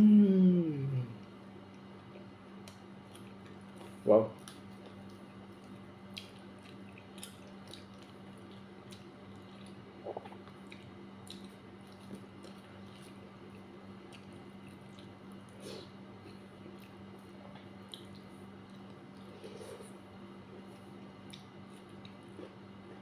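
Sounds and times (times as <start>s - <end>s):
faint steady hum: 0.0s - 23.0s
chewing mouth smacks: 1.2s - 20.0s, 20.6s - 23.0s.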